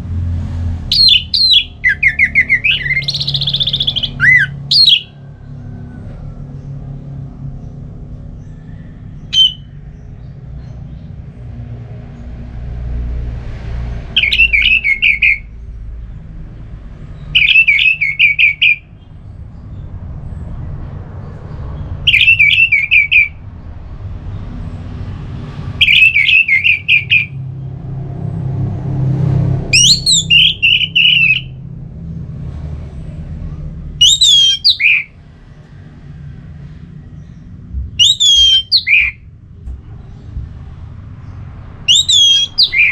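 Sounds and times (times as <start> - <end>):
thrush singing: 0.8 - 5.2, 9.3 - 9.7, 14.0 - 15.5, 17.3 - 19.0, 22.0 - 23.4, 25.7 - 27.4, 29.7 - 31.6, 34.0 - 35.2, 37.9 - 42.9
steady low hum: 34.6 - 42.9.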